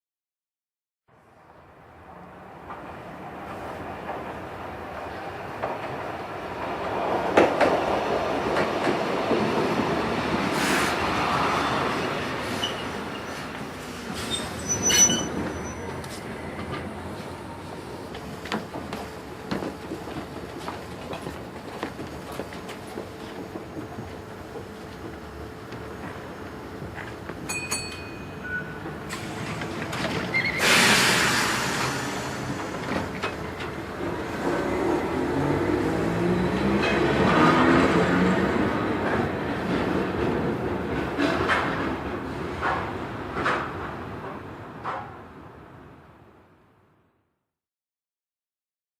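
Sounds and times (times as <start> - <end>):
train rumbling on rails: 1.2 - 46.5
short high squeals: 14.2 - 16.0, 30.3 - 31.9
short hiss: 30.5 - 32.8.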